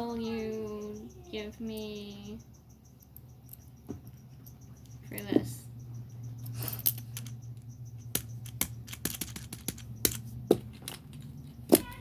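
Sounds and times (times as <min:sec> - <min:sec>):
steady low hum: 0:00.0 - 0:12.0
plastic toys clicking and tapping: 0:06.8 - 0:12.0.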